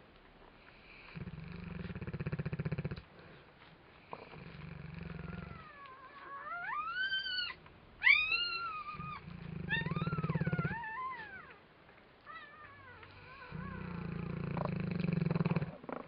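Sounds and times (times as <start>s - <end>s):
dog snoring: 0.8s - 3.3s, 4.1s - 7.0s, 8.5s - 11.4s, 12.6s - 16.0s
dog whining: 5.0s - 11.6s, 12.2s - 14.8s.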